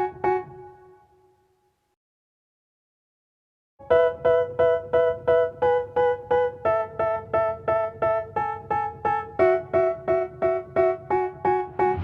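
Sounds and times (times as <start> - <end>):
piano-like keyboard chords: 0.0 - 1.1, 3.8 - 12.0.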